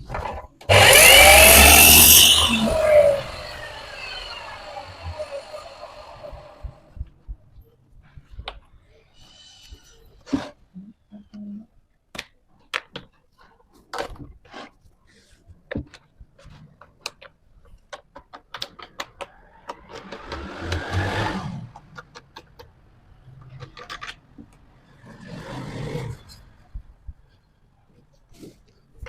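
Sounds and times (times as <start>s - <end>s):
wood scraping: 0.7s - 6.7s.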